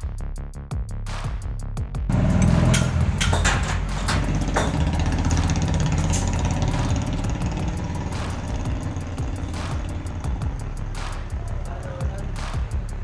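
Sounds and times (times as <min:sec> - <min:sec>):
starter motor whirring: 0:02.1 - 0:10.6.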